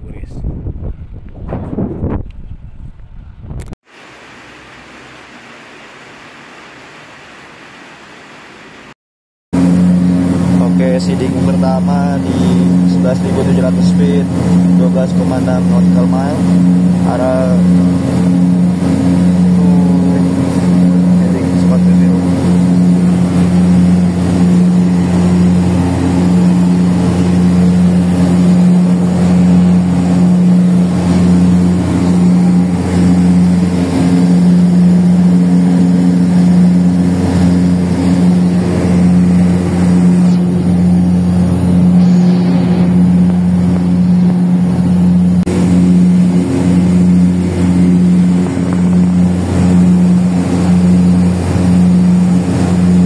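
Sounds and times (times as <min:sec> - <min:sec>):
aircraft engines droning: 0:09.6 - 0:53.0.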